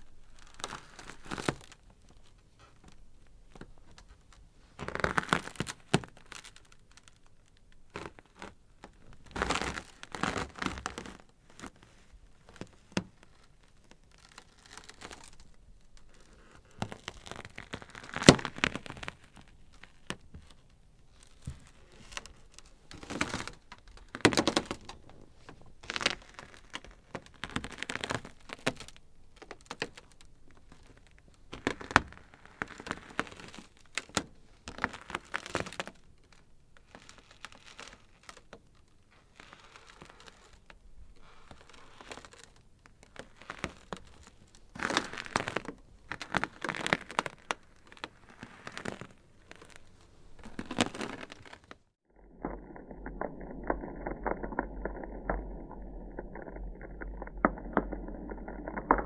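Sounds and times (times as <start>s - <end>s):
ice cracking: 43.2s - 59.0s.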